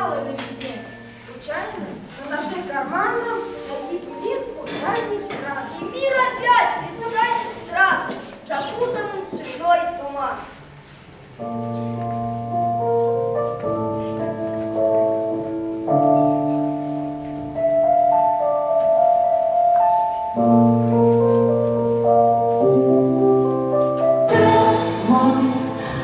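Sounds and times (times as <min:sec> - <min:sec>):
brighter fuller accompaniment: 0:00.0 - 0:10.0, 0:10.6 - 0:26.0
slow held chords: 0:11.4 - 0:26.0.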